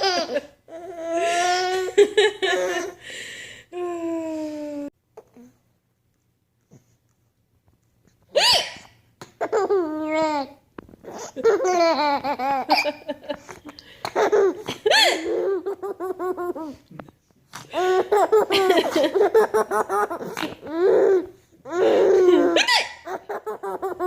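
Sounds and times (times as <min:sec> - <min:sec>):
baby laughing: 0:00.0 - 0:03.0, 0:08.4 - 0:16.8, 0:17.6 - 0:24.0.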